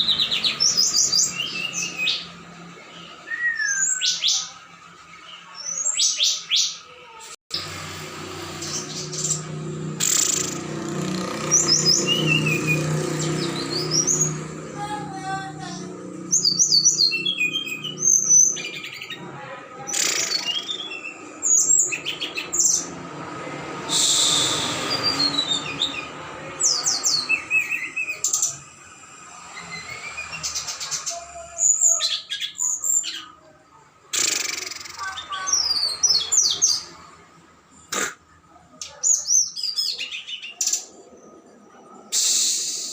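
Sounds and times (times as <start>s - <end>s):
songbirds chirping: 0.0s - 7.0s, 8.5s - 42.2s
short harsh bursts: 23.6s - 26.0s.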